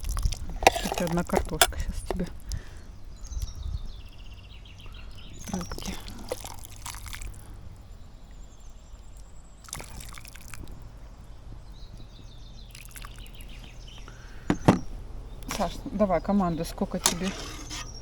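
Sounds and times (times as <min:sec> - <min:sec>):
soup sloshing and dripping: 0:00.0 - 0:02.6, 0:05.4 - 0:07.7, 0:09.6 - 0:10.8, 0:12.6 - 0:14.7, 0:16.9 - 0:18.0.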